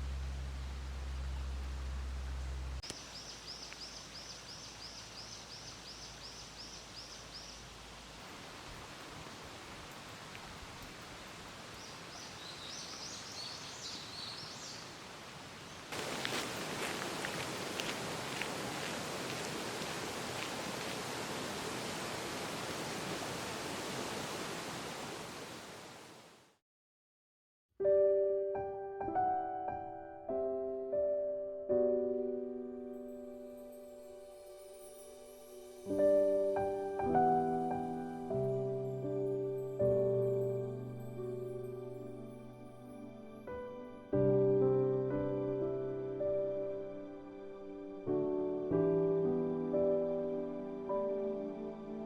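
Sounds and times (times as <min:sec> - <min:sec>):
low hum: 0:00.0 - 0:02.9
steady outdoor hiss: 0:00.0 - 0:26.6, 0:32.4 - 0:52.0
waterfall rushing: 0:15.9 - 0:26.2
piano music: 0:27.8 - 0:52.0.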